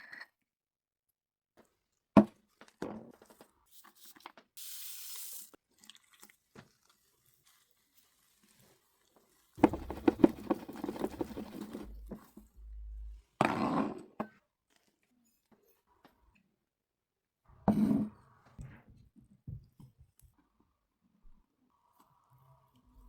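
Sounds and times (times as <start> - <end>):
clattering and scraping: 9.6 - 13.2.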